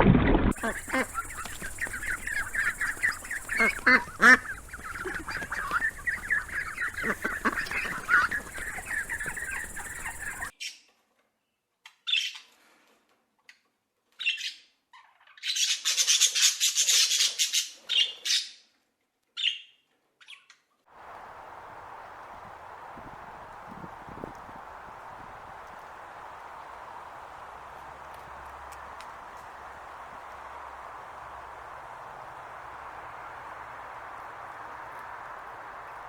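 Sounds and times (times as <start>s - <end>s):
bird squawking: 0.5s - 10.5s
flock of birds calling: 0.5s - 10.5s, 21.0s - 36.0s.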